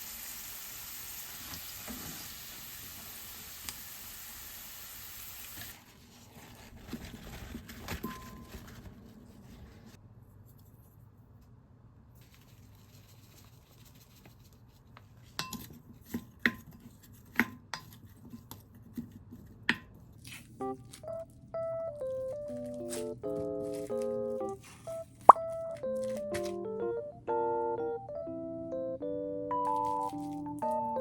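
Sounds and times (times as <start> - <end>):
frying sizzle: 0.0 - 5.8
dishes and utensils clinking: 8.0 - 8.8, 15.4 - 16.7.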